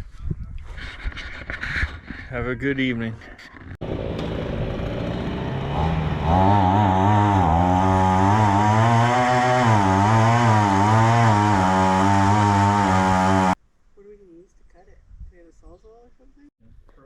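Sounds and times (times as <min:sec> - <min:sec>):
small engine running: 0:03.8 - 0:13.6.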